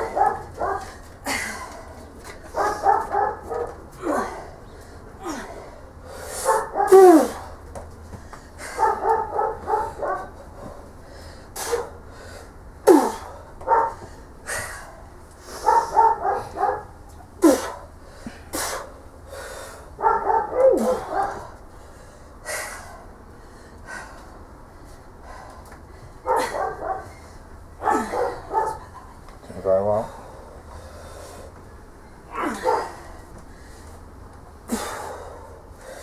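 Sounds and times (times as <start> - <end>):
dog barking: 0.0 - 0.9, 2.5 - 3.8, 6.4 - 7.0, 8.7 - 10.3, 11.6 - 12.0, 13.6 - 14.0, 15.6 - 17.0, 20.0 - 21.5, 26.2 - 27.2, 27.8 - 28.9, 32.4 - 33.0.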